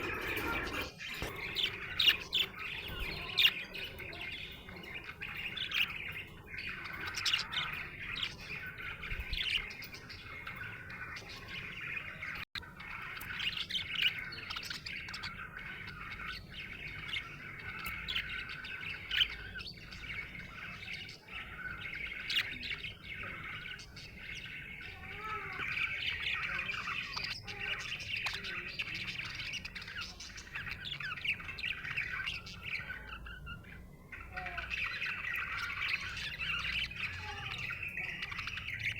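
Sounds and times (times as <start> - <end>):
budgerigar squawk: 0.0 - 3.4
budgerigar chirping: 0.0 - 38.9.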